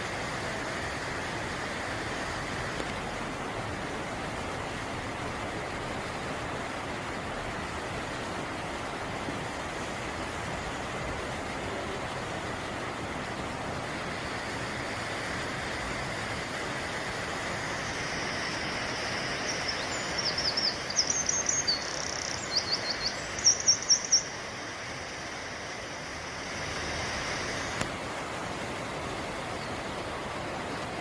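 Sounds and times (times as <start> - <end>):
waterfall rushing: 0.0 - 31.0
songbird chirping: 17.8 - 24.5.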